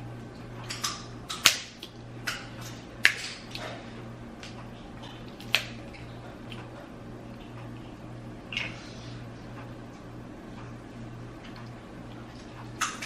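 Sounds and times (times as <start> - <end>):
eating cracks and clicks: 0.4 - 3.8, 4.4 - 8.8, 11.4 - 13.0.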